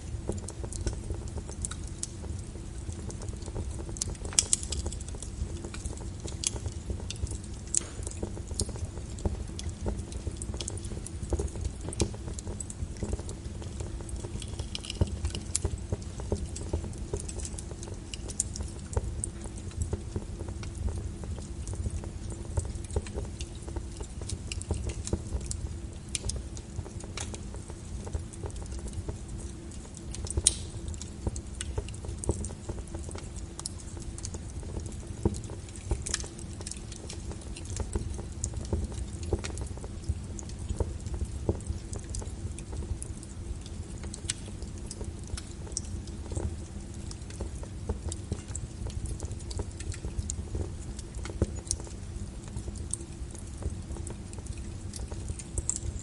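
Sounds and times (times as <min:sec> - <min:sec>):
low rumble of flames: 0:00.0 - 0:56.0
wood fire crackling: 0:00.0 - 0:56.0.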